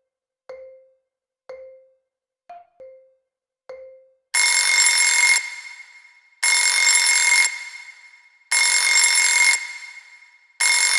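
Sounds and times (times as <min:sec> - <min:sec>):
mallet-like countdown tone: 0:00.0 - 0:04.8
alarm bell ringing: 0:04.4 - 0:10.9.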